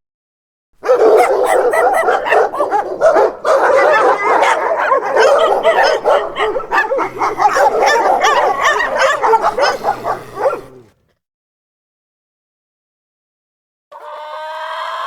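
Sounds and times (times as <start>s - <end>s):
dogs yipping and barking: 0.8s - 10.9s.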